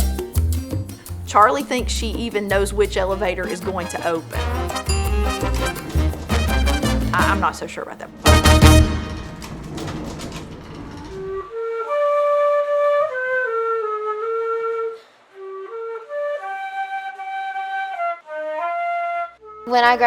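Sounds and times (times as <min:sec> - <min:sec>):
music tail: 0:00.0 - 0:07.6, 0:08.2 - 0:09.8
solo flute slow melody: 0:11.5 - 0:19.7.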